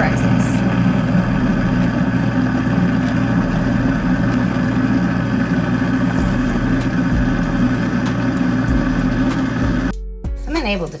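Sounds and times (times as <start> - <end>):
garbage disposal motor hum: 0.0 - 9.9.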